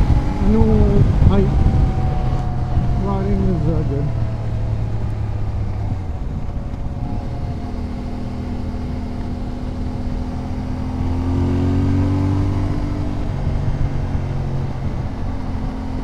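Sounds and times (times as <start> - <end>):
motorcycle engine running: 0.0 - 16.0
wind rushing over microphone: 0.0 - 16.0.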